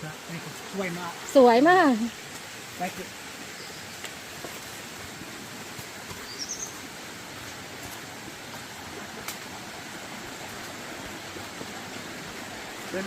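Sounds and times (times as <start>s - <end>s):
stream water running: 0.0s - 13.0s
high rising bird chirp: 6.2s - 6.8s.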